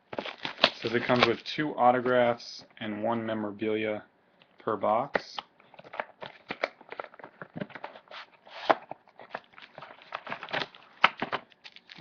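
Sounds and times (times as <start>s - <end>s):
plastic wrap and cardboard crackling: 0.0s - 2.1s, 5.8s - 12.0s.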